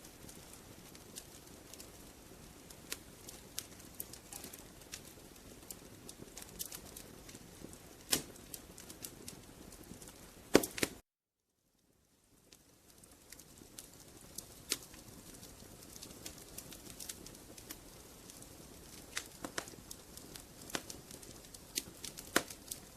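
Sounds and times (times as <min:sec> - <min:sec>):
wood fire crackling: 0:00.0 - 0:11.0, 0:11.7 - 0:22.9.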